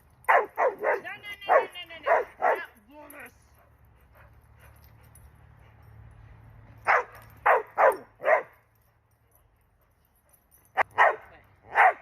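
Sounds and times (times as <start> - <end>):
dog barking: 0.3 - 2.7, 6.9 - 8.5, 11.0 - 12.0.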